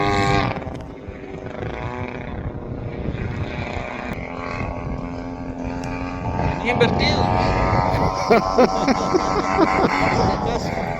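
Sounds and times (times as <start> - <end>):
model plane engine and propeller: 0.0 - 7.9.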